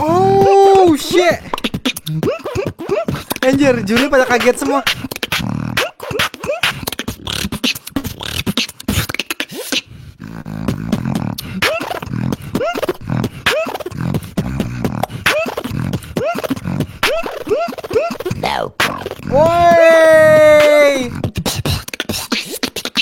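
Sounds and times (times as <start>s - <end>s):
beatboxing: 0.0s - 23.0s.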